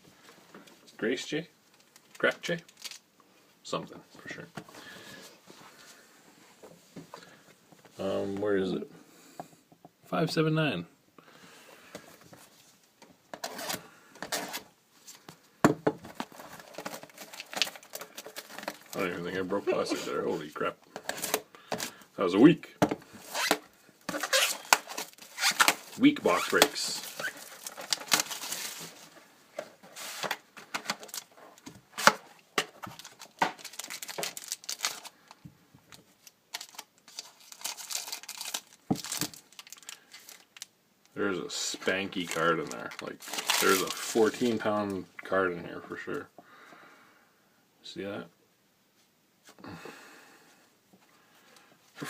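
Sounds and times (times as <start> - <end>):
plastic packaging rustling and crinkling: 1.6 - 3.1, 16.0 - 40.8, 41.4 - 45.1
plastic packaging cracking: 16.5 - 19.1, 23.4 - 28.6, 32.0 - 35.4, 36.2 - 40.7, 42.2 - 44.3.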